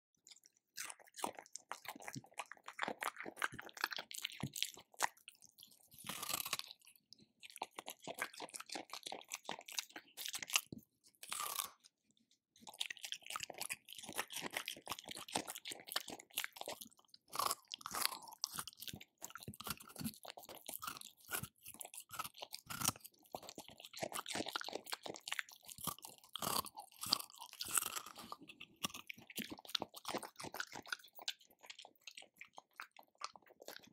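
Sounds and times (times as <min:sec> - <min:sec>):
dog chewing dry food: 0:00.8 - 0:06.8, 0:12.6 - 0:33.9.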